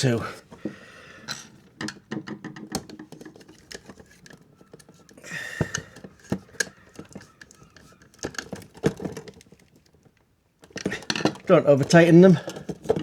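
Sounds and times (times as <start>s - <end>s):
screwdriver clicks and scrapes: 1.2s - 9.5s.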